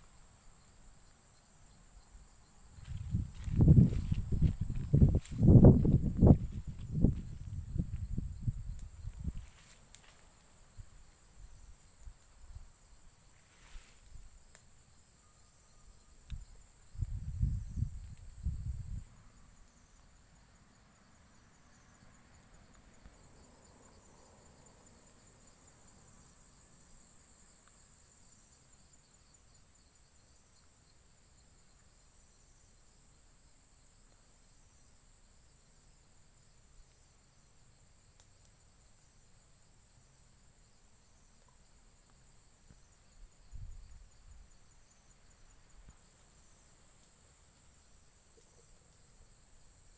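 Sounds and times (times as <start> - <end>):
crickets trilling: 0.0 - 49.9.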